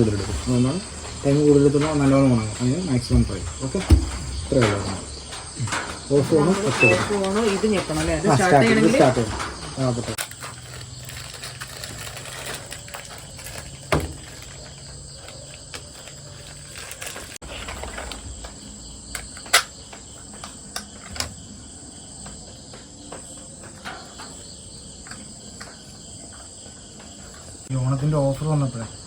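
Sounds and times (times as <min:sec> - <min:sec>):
sharp clicks and knocks: 0:00.4 - 0:08.2.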